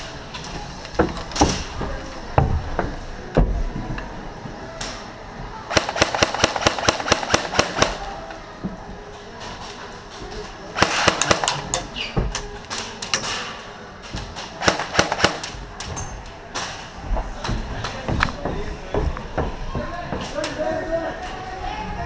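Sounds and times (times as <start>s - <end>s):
airsoft guns firing: 5.7s - 8.2s, 10.8s - 11.7s, 14.6s - 15.6s.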